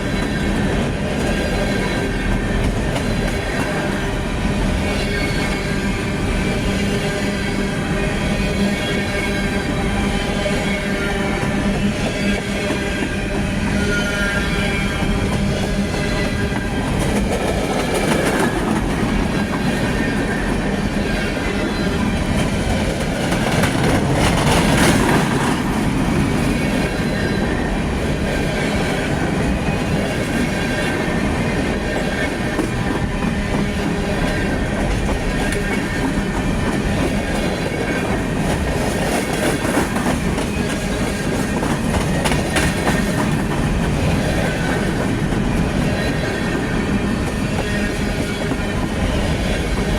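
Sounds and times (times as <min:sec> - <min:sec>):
train cars rumbling past: 0:00.0 - 0:49.9
wheels clacking over rail joints: 0:15.4 - 0:27.6.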